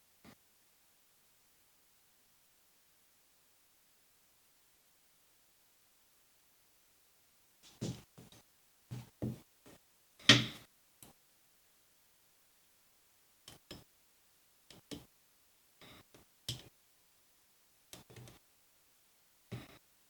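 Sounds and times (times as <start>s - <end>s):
handling knocks and clicks: 10.3s - 10.6s.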